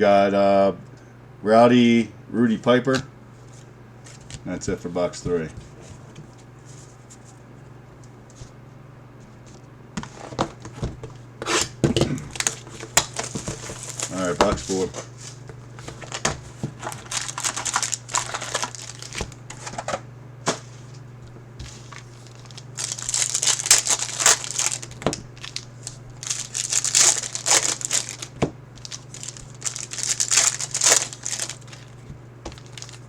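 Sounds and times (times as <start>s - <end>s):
plastic wrapping crinkling and tearing: 12.3s - 20.0s, 21.6s - 33.0s.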